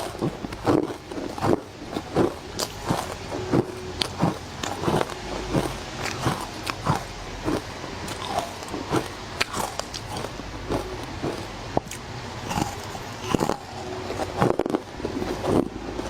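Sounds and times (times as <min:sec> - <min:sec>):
crunchy bites into frozen ice: 0:00.0 - 0:15.7.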